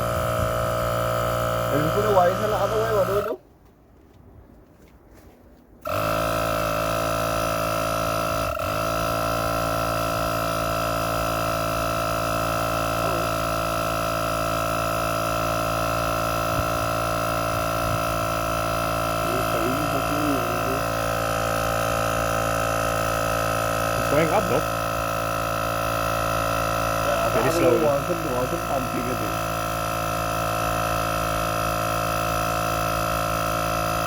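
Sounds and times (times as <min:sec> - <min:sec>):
machine hum with high whine: 0:00.0 - 0:03.4, 0:05.5 - 0:34.0.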